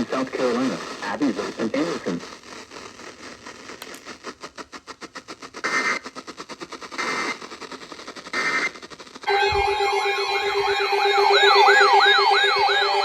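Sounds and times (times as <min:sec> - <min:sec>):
rapid clicking static: 0:00.0 - 0:09.3
wailing siren: 0:09.2 - 0:13.0
steady tone: 0:09.3 - 0:13.0
warbling digital data tones: 0:09.3 - 0:13.0.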